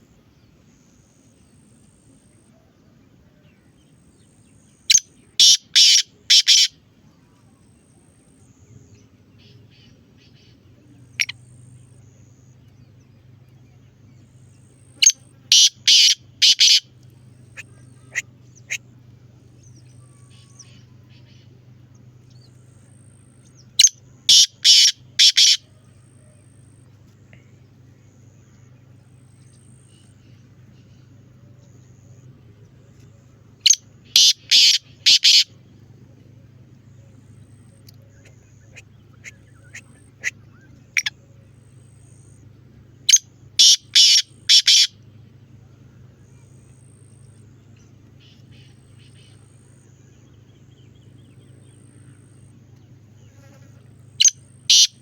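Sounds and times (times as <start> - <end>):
steady low hum: 0.0 - 55.0
francolin calling: 3.9 - 13.0, 14.2 - 19.0, 19.6 - 32.3, 33.0 - 35.7, 36.7 - 55.0.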